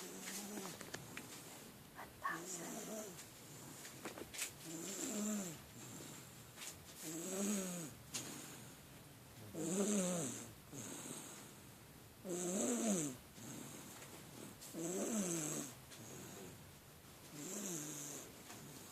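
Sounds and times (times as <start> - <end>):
soft breaths: 0.0 - 7.1, 8.1 - 9.6, 10.4 - 11.9, 13.3 - 18.9
baby snoring: 4.6 - 6.2, 7.0 - 8.0, 9.5 - 11.4, 12.2 - 13.8, 14.4 - 16.6, 17.3 - 18.3.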